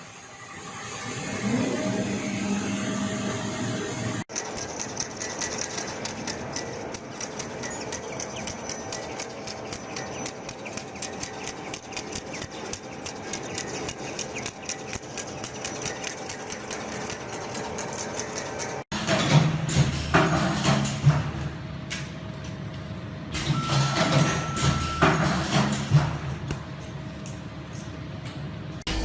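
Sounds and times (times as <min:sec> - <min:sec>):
machine clicking and humming: 0:04.3 - 0:19.4.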